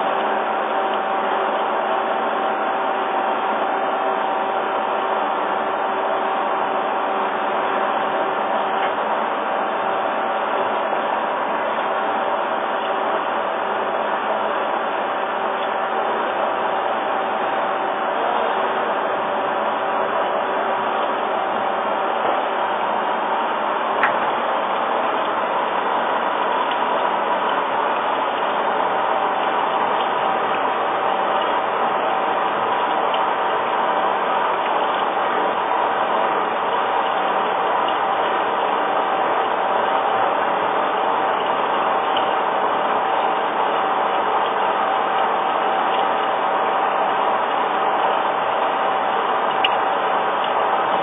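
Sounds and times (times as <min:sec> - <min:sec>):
gear-cutting machine running: 0:00.0 - 0:51.0.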